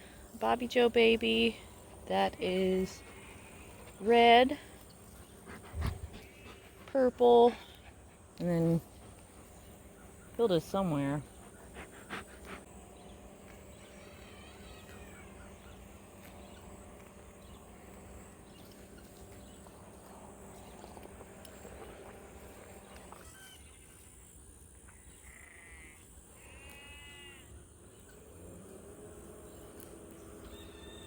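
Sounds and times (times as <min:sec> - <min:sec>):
animal calls: 0:13.8 - 0:16.9.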